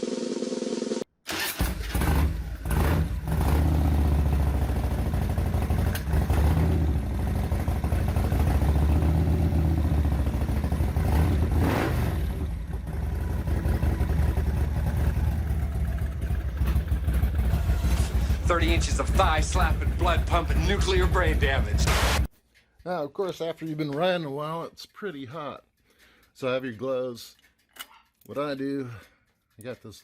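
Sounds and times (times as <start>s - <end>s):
motorcycle engine idling and revving: 0.0s - 22.3s
motorcycle engine cranking: 1.3s - 9.3s, 10.3s - 21.7s.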